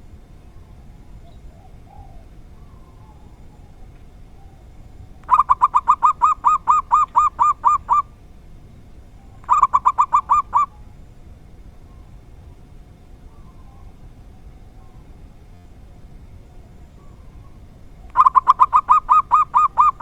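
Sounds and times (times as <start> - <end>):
dove calling in staccato notes: 5.1 - 8.4, 9.2 - 11.0, 16.9 - 20.0.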